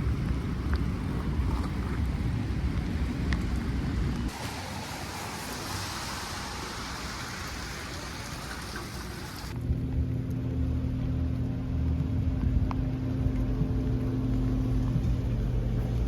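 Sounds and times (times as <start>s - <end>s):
rain falling: 2.1s - 9.6s
low droning rumble: 9.5s - 16.0s.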